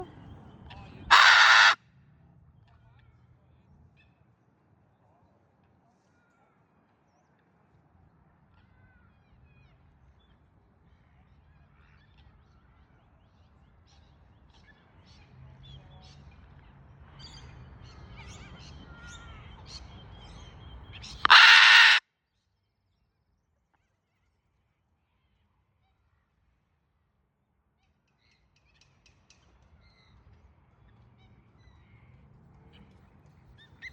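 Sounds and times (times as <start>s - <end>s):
faint bird chirps and calls: 1.1s - 1.8s, 17.2s - 22.0s
harsh macaw scream: 1.1s - 1.8s, 21.2s - 22.0s.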